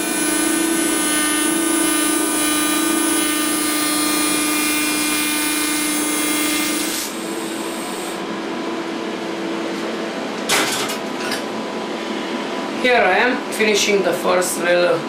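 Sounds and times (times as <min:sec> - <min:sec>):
welding arc buzzing: 0:00.0 - 0:08.4
machine hum: 0:00.0 - 0:14.1.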